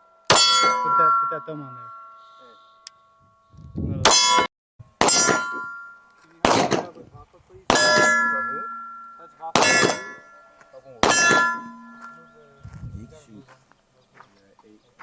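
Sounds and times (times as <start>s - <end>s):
steel plate ringing: 0.0s - 6.9s, 7.7s - 13.2s
handgun shots: 6.4s - 6.9s, 9.6s - 10.2s, 11.0s - 11.6s.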